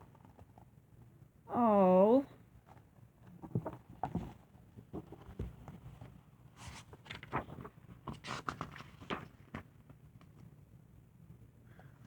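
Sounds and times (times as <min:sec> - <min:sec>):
paper book rustling: 0:05.0 - 0:10.0.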